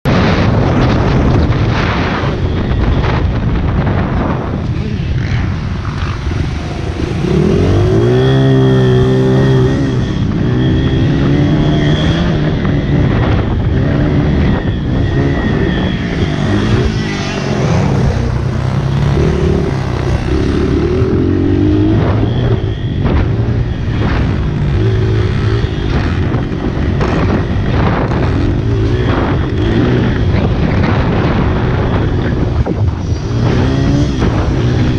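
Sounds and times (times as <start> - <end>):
motorbike engine revving: 0.2 - 34.9.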